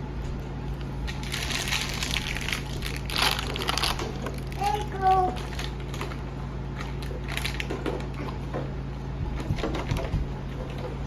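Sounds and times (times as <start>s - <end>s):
steady low hum: 0.0s - 11.0s
toys and plastic packaging handled: 1.1s - 6.2s, 7.0s - 7.8s.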